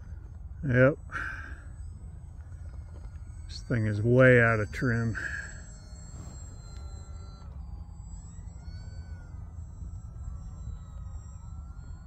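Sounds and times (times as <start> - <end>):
low wind rumble: 0.0 - 7.8
model plane motor whining: 0.0 - 12.0.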